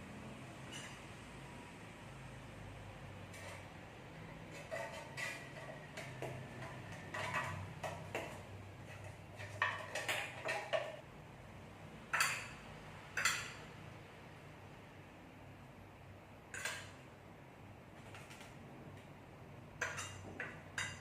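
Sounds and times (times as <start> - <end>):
utensils scraping metal cookware: 0.6 - 1.1, 3.2 - 11.0.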